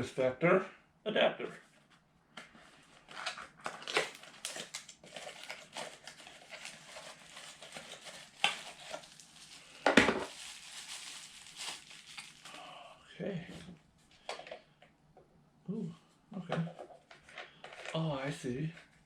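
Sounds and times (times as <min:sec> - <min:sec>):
packaging rustling and crinkling: 0:02.7 - 0:12.8.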